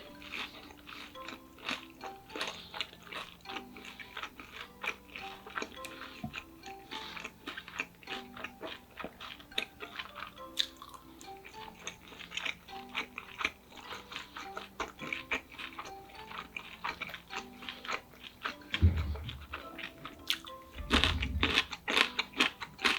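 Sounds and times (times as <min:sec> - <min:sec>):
crunching and chewing fried food: 0:00.0 - 0:22.9
soft melodic background music: 0:00.0 - 0:22.9
low thuds: 0:18.7 - 0:19.6, 0:20.8 - 0:21.8.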